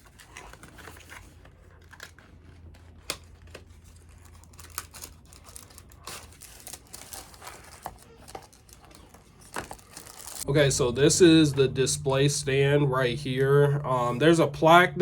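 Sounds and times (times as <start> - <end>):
packaging rustling: 0.0 - 10.4
faint low hum: 9.9 - 15.0.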